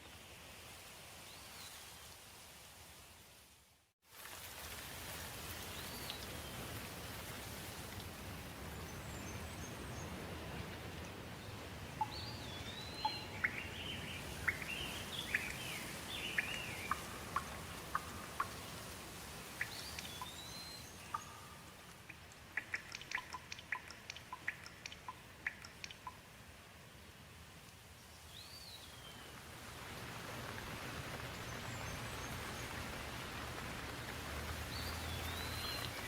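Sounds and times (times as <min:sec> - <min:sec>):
steady rain falling: 0:00.0 - 0:36.0
birds chirping: 0:11.4 - 0:18.8, 0:19.5 - 0:26.2, 0:34.6 - 0:36.0
water drops dripping: 0:12.0 - 0:26.4.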